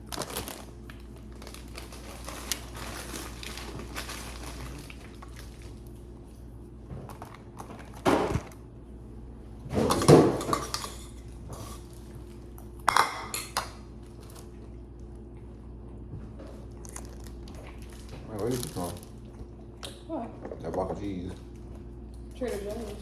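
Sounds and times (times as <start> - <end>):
faint steady hum: 0.0 - 23.0
dishes clattering: 9.7 - 11.6, 12.8 - 13.8.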